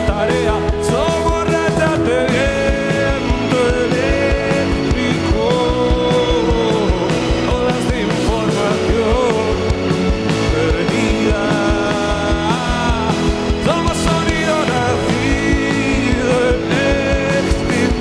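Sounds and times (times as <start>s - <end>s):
drums beating: 0.0s - 18.0s
rock band playing live: 0.0s - 18.0s
wordless singing voice: 0.0s - 18.0s.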